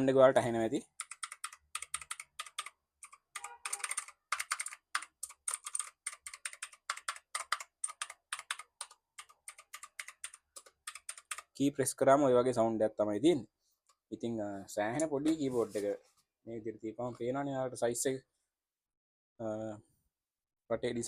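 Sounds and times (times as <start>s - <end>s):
clicky mechanical keyboard typing: 1.0s - 11.5s.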